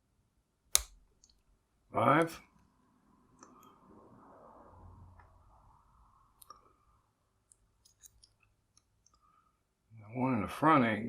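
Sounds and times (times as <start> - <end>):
lock pick clicking in padlock: 0.7 - 1.4.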